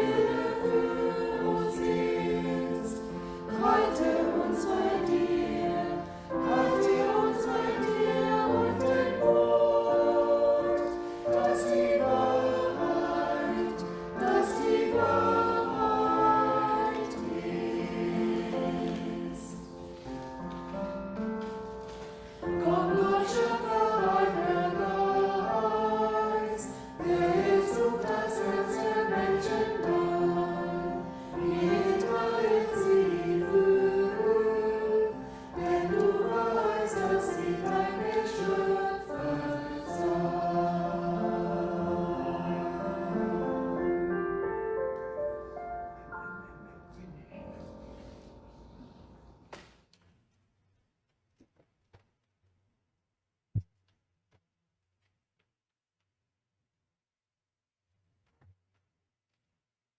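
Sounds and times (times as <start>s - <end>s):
group singing a hymn: 0.0s - 20.6s, 22.3s - 44.6s.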